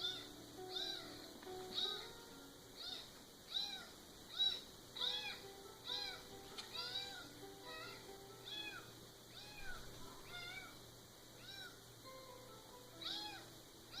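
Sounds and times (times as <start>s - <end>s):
recorded cat meows: 2.8s - 10.8s, 13.0s - 14.0s.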